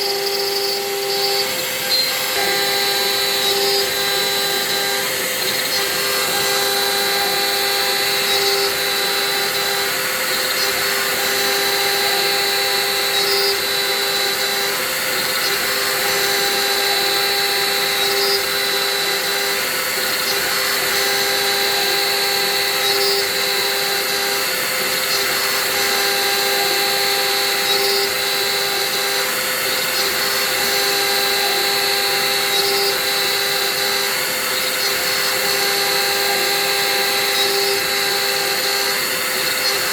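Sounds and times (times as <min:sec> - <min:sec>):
milling machine motors whining: 0:00.0 - 0:39.9.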